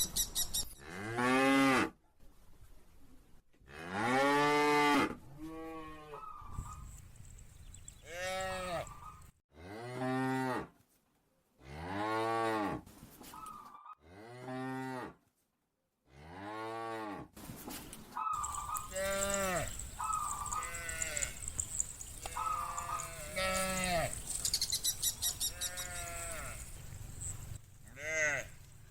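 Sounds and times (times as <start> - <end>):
cows mooing: 8.0 - 10.6, 18.4 - 28.6.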